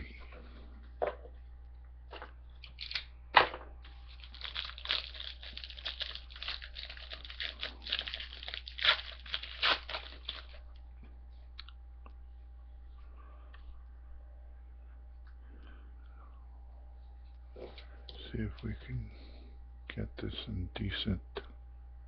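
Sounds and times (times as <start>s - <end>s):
foil wrapper crinkling: 2.6s - 3.1s, 3.8s - 10.8s.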